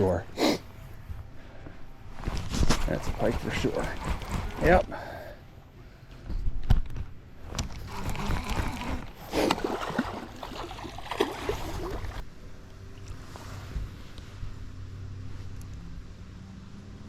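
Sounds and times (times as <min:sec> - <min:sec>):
water splashing and sloshing: 0:02.1 - 0:05.2, 0:07.4 - 0:12.3.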